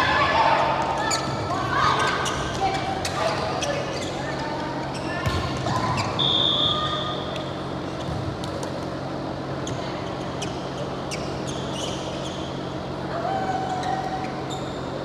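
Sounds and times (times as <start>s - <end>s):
low hum and room noise: 0.0s - 15.0s
shoe squeaks and clicks on court: 9.6s - 12.7s.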